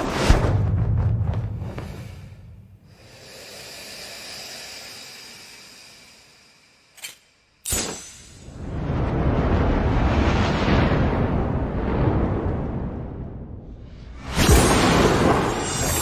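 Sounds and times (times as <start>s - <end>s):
low rumble: 0.2s - 3.1s, 8.5s - 15.6s.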